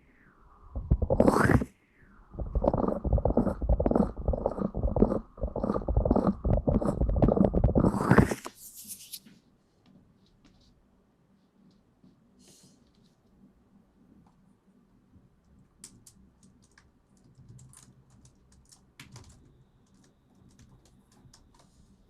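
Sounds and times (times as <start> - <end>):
rubbing against microphone: 0.8 - 1.7, 2.4 - 9.4.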